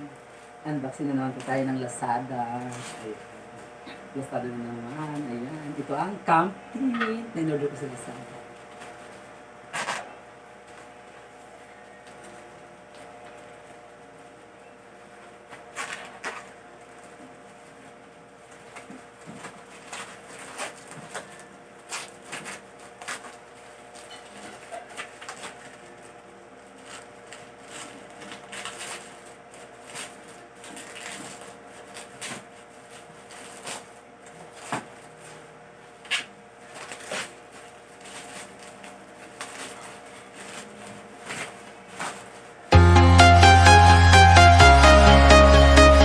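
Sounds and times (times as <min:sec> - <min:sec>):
packaging rustling and crackling: 0:18.5 - 0:42.6.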